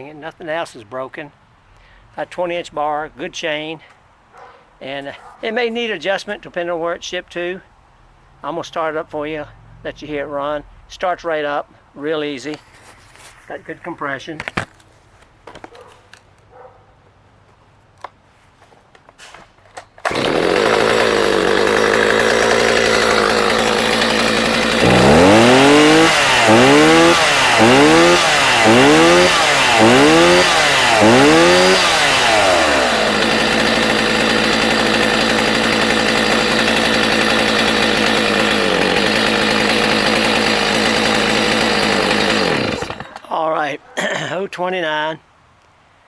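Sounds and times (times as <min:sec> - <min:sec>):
chainsaw idling and revving: 0:20.0 - 0:43.3.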